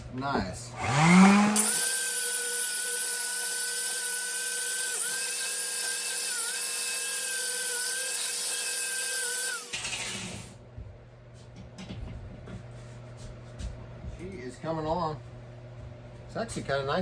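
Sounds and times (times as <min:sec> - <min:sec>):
small power tool whining: 0:00.7 - 0:10.5.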